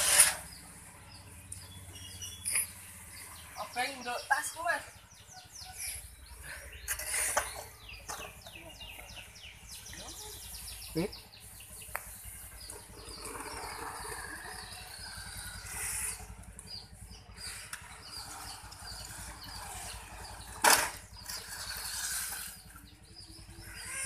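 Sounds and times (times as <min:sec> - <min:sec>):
toy car electric motor: 0:00.0 - 0:00.7, 0:12.6 - 0:16.8, 0:17.4 - 0:24.0
birds chirping faintly: 0:00.0 - 0:24.0.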